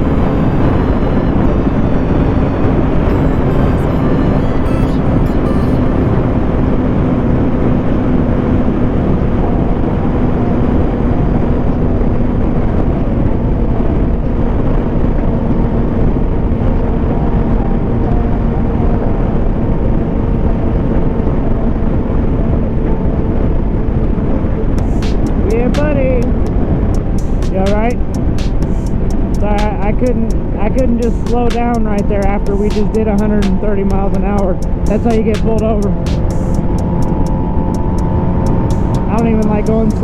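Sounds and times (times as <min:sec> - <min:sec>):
wind rush on microphone: 0:05.9 - 0:31.0, 0:36.6 - 0:40.0.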